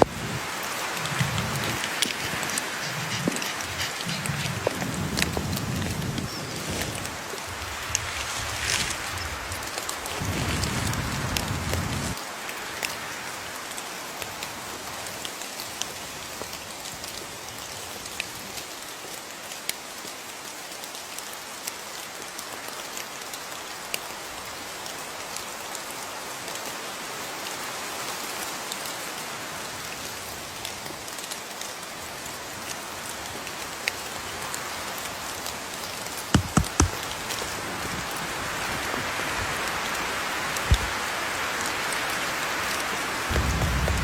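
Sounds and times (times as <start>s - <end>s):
steady rain falling: 0.0s - 44.0s
low rumble: 43.3s - 44.0s.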